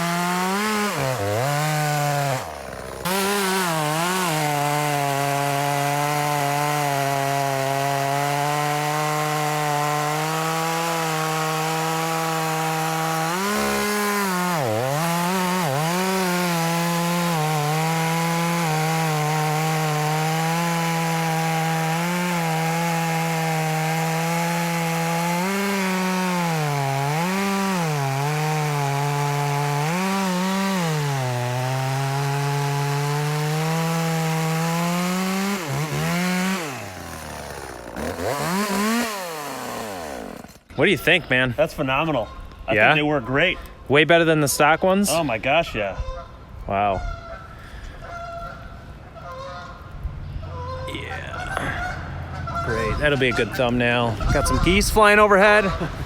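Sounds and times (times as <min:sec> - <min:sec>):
chainsaw cutting log: 0:00.0 - 0:40.7, 0:52.5 - 0:56.0.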